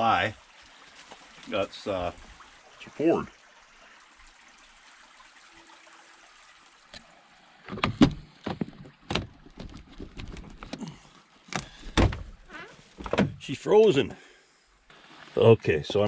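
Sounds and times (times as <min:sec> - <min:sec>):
knocks and clunks on a truck: 0:07.8 - 0:10.8, 0:11.5 - 0:13.4.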